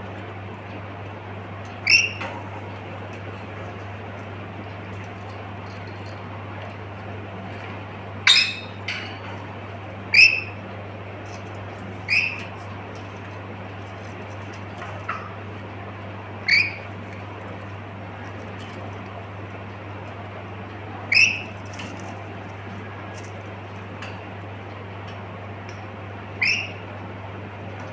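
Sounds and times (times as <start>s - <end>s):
parrot calls: 1.8s - 2.2s, 10.1s - 10.6s, 12.1s - 12.5s, 16.4s - 16.9s, 21.1s - 21.5s, 26.4s - 26.8s.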